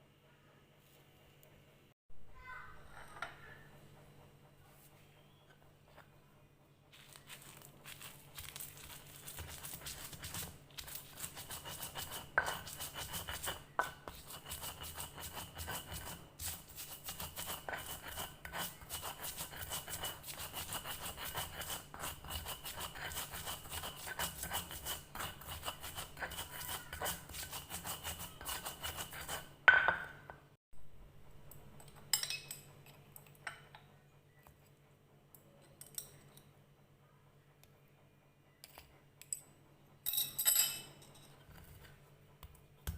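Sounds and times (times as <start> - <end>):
kitchen utensils clinking and scraping: 40.0 - 42.0.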